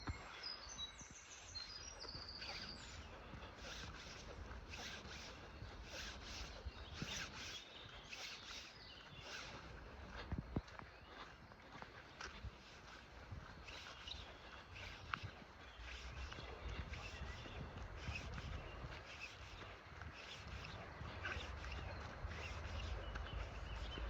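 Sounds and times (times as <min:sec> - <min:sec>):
songbird phrases: 0:00.0 - 0:04.5, 0:05.2 - 0:10.1, 0:13.6 - 0:19.8, 0:20.6 - 0:24.0.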